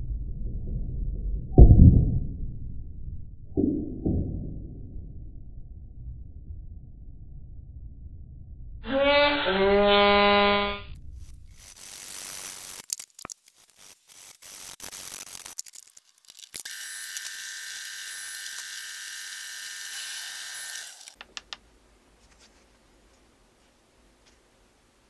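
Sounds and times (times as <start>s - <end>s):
small electric motor whining: 16.6s - 21.2s.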